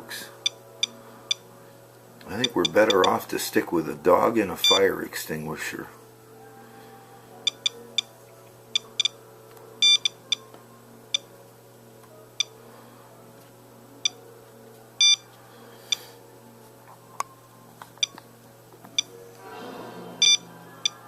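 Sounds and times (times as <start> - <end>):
geiger counter beeping: 2.4 - 3.2, 4.6 - 4.8, 8.7 - 9.2, 9.8 - 10.4, 15.0 - 15.2, 20.2 - 21.0.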